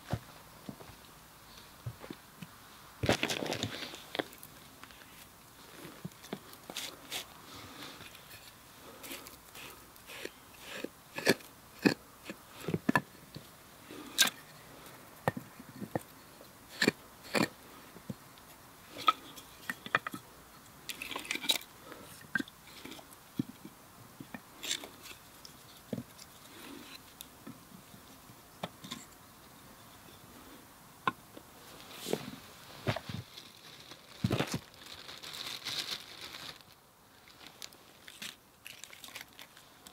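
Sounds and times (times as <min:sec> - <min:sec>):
soft crunching: 0:00.0 - 0:30.6, 0:31.4 - 0:39.9
dry wood cracking and snapping: 0:37.6 - 0:39.9.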